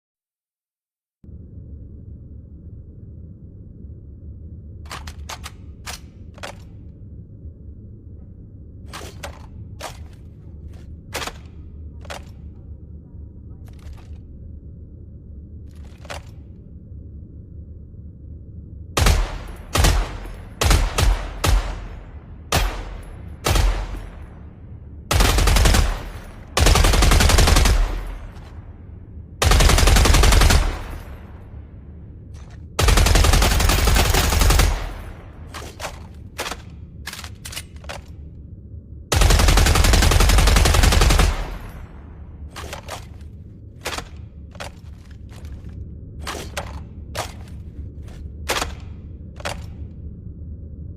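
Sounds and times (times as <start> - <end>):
low hum: 1.2 - 50.9
machine gun firing in bursts: 19.0 - 24.3, 25.1 - 28.6, 29.4 - 31.4, 32.8 - 35.3, 39.1 - 41.7.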